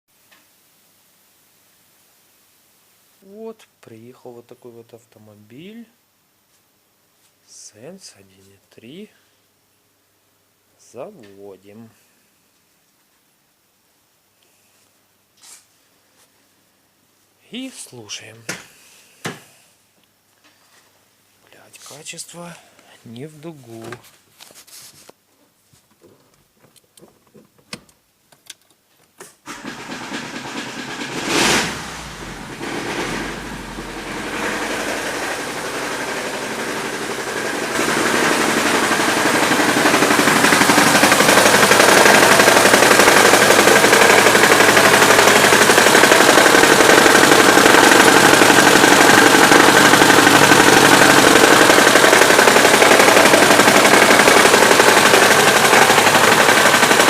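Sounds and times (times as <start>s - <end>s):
car engine running: 29.5s - 57.0s
engine knocking: 29.5s - 57.0s.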